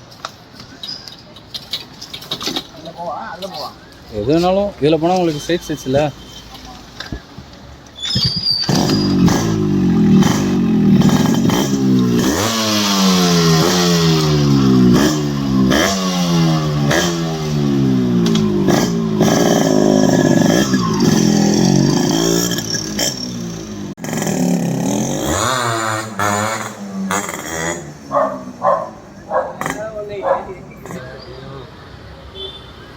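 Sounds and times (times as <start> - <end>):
motorcycle engine revving: 8.7 - 31.2.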